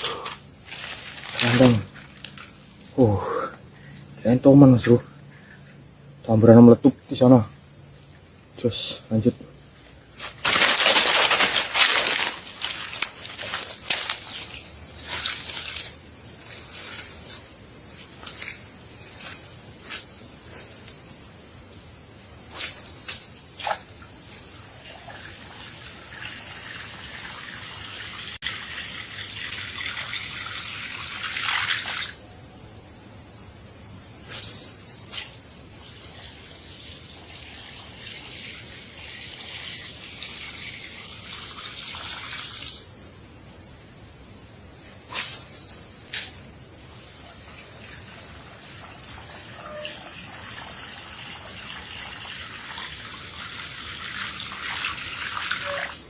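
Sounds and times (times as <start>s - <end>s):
high insect drone: 0.0s - 56.0s
splashing on open water: 10.3s - 16.0s.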